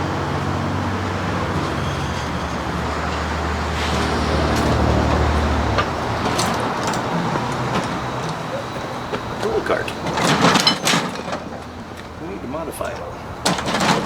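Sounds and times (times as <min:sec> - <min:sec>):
outdoor background noise: 0:00.0 - 0:14.0
vehicle engine humming: 0:00.0 - 0:14.0.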